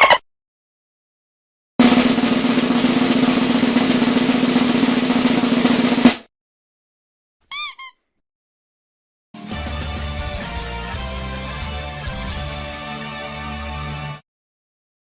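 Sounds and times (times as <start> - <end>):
snare drum roll: 1.8 - 6.3
short high chirp: 7.5 - 8.0.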